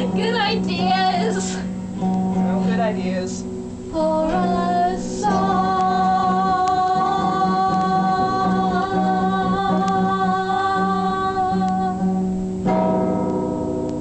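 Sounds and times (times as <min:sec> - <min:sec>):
instrumental accompaniment: 0:00.0 - 0:14.0.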